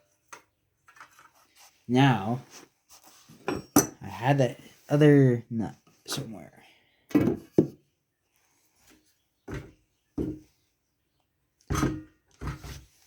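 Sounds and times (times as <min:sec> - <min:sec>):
metal engine parts and tools clinking: 0:03.4 - 0:04.0.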